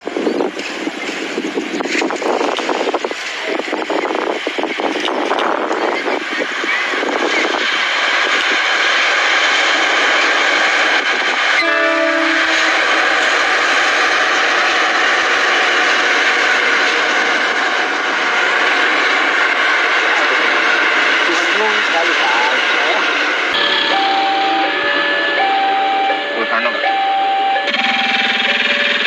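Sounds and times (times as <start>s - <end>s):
diesel locomotive running: 0.0s - 29.0s
train horn blast: 11.6s - 14.3s.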